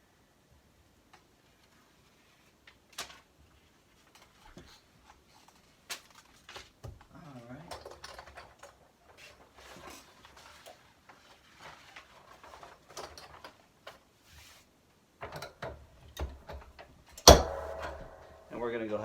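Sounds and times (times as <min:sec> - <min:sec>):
materials rustling and clicking: 0:01.0 - 0:18.6
loud clunk: 0:17.2 - 0:18.5.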